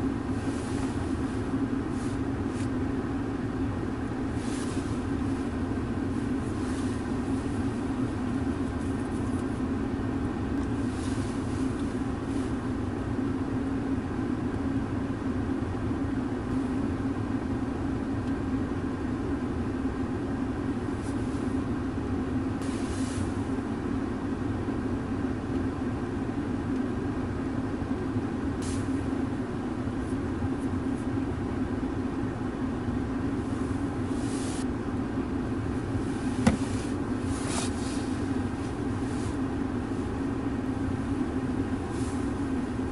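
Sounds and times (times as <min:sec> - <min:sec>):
car interior hum: 0:00.0 - 0:42.9
brief hisses: 0:28.6 - 0:29.0.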